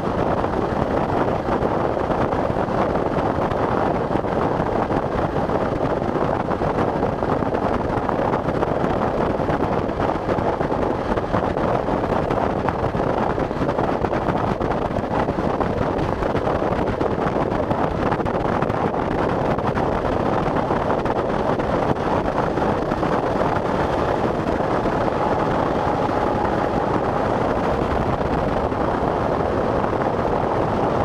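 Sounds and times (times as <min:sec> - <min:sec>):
vehicle driving through heavy rain: 0:21.2 - 0:31.0.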